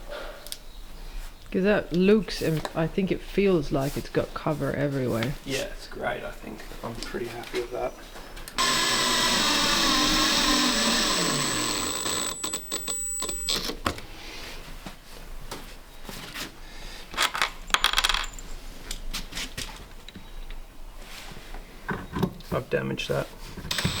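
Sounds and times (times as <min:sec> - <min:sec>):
machine motor winding down: 0:08.6 - 0:13.6, 0:23.7 - 0:24.0.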